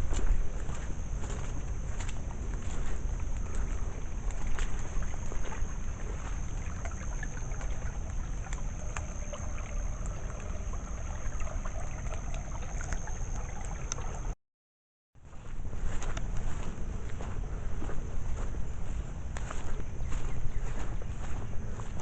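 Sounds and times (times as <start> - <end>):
wind rumble on microphone: 0.0 - 14.3, 15.2 - 22.0
rainwater rushing: 6.5 - 14.3.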